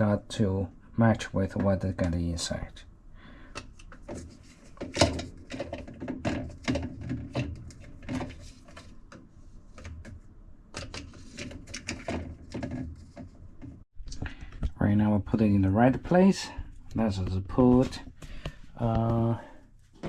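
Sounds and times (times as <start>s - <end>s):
plastic parts knocking and clicking: 3.5s - 9.2s, 9.8s - 14.8s.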